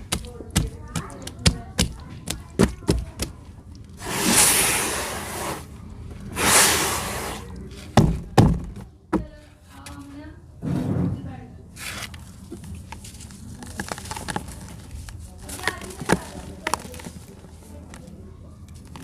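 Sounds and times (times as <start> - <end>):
loose sand spilling: 4.0 - 5.7, 6.3 - 7.6.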